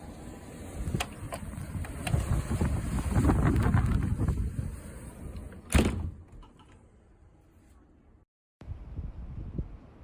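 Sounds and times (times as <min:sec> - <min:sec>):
wind buffeting microphone: 0:00.5 - 0:05.5, 0:08.6 - 0:10.0.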